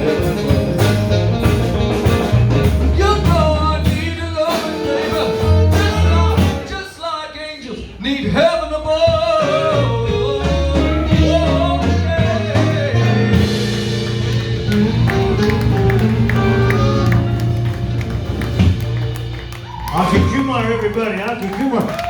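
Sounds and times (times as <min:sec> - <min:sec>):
blues band playing: 0:00.0 - 0:07.2, 0:07.8 - 0:22.0
person singing: 0:02.9 - 0:13.8.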